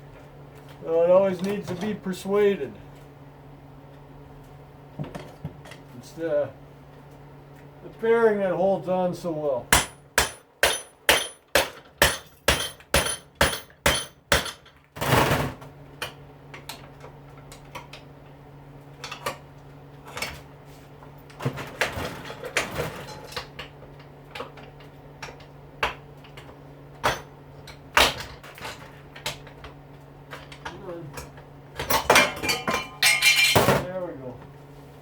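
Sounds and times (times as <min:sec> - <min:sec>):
steady low hum: 0:00.0 - 0:14.9
hammer striking metal: 0:09.7 - 0:14.6.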